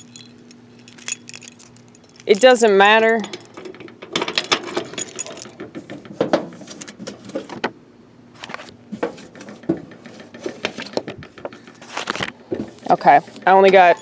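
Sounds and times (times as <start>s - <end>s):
keys and mailbox rattling: 0.0s - 7.3s.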